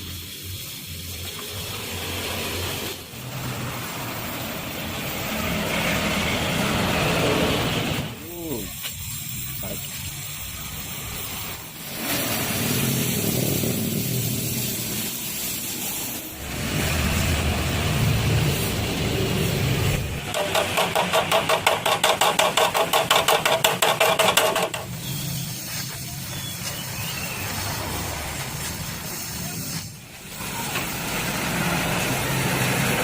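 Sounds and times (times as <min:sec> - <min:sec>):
welding on steel frame: 0:00.0 - 0:07.2, 0:07.8 - 0:33.0.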